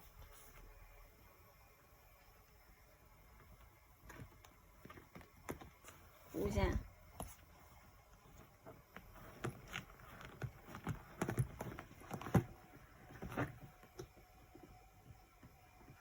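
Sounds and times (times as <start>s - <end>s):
small animal gnawing and scrabbling: 3.5s - 14.8s.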